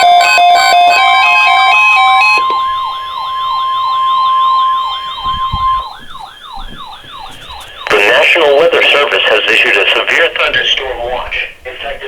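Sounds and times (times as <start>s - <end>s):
electronic siren wailing: 0.0s - 8.6s
steady high alert tone: 0.0s - 8.9s.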